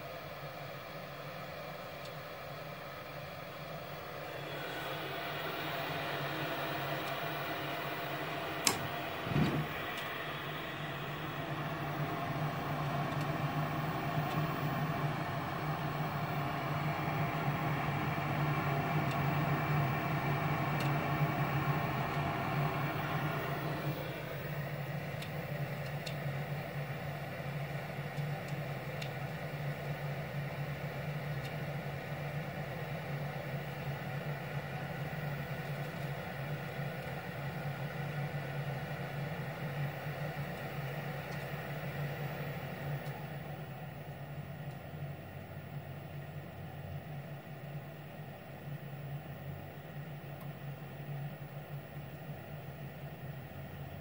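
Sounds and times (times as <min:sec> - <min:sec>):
furnace humming: 0:00.0 - 0:54.0
dull thump: 0:09.2 - 0:09.8.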